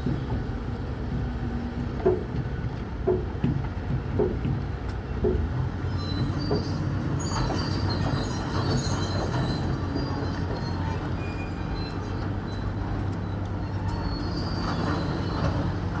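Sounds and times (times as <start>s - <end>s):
metal-on-metal squeals: 5.9s - 15.9s.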